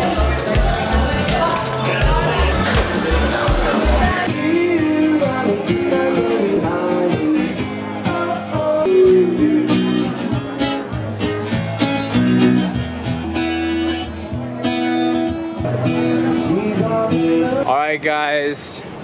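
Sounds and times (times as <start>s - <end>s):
person singing: 0.0s - 10.6s
acoustic guitar music: 0.0s - 17.7s.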